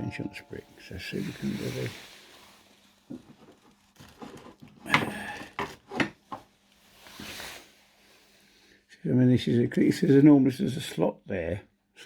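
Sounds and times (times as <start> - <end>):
soft rustle: 0.5 - 4.8, 6.4 - 8.6.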